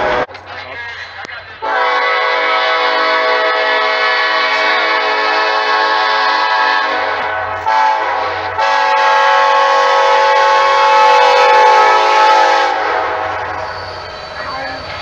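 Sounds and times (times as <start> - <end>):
locomotive air horn chord: 1.6 - 13.6.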